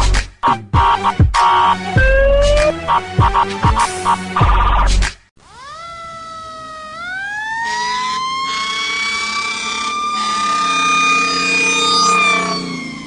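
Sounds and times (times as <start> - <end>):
siren wailing: 0.9 - 3.6, 5.4 - 13.0.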